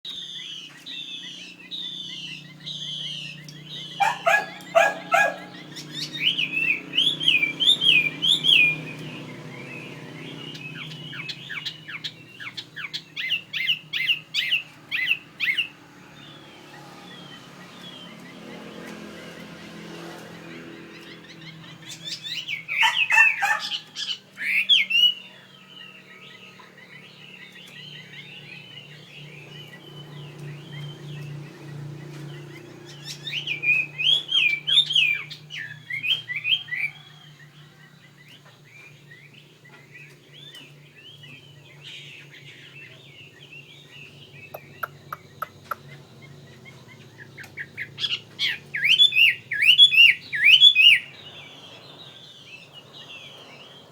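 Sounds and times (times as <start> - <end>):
bird singing whistled phrases: 0.1 - 9.0
bird chattering: 0.1 - 9.1, 20.8 - 25.2, 44.4 - 46.4.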